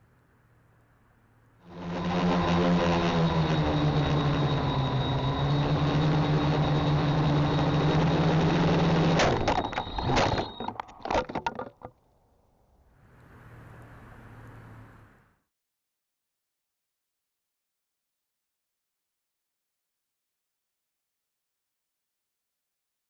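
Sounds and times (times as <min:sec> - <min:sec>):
drone motors whining: 0:01.6 - 0:10.8.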